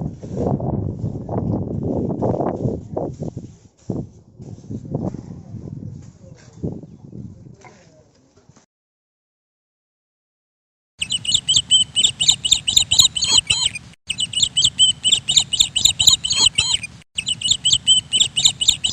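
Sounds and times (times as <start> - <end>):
birds chirping rapidly: 11.0 - 18.9.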